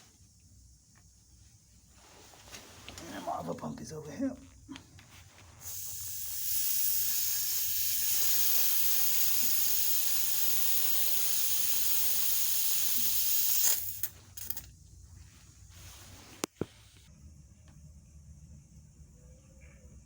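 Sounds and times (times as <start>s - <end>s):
air hissing from vent: 5.3s - 14.4s.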